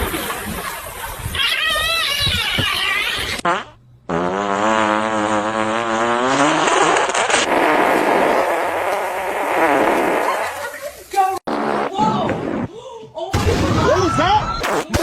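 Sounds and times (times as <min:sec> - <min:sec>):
long buzzy fart sound: 0:01.3 - 0:10.8, 0:11.5 - 0:12.7.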